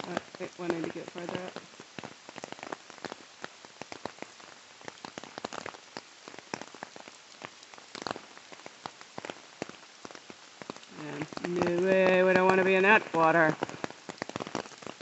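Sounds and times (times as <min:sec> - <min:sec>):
flooded river rushing: 0:00.0 - 0:03.0, 0:10.7 - 0:15.0.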